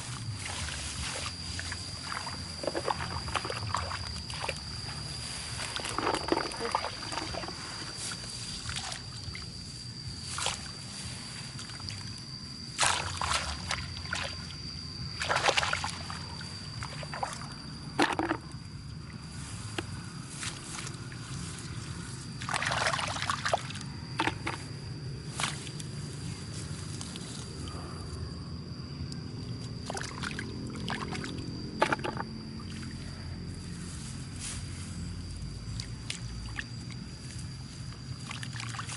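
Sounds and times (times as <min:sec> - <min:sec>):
high-pitched whine: 0:00.0 - 0:38.9
steady low rumble: 0:00.0 - 0:38.9
muddy water sloshing and splashing: 0:00.4 - 0:09.5, 0:12.8 - 0:19.2, 0:22.4 - 0:24.7, 0:29.8 - 0:33.0, 0:35.6 - 0:37.4, 0:38.1 - 0:38.9.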